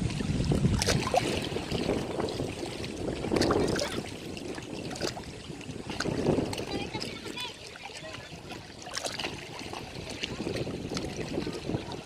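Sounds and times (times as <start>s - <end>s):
ocean waves washing ashore: 0.0s - 12.0s
small splashes and clicks: 0.6s - 1.9s, 2.6s - 5.3s, 5.9s - 12.0s.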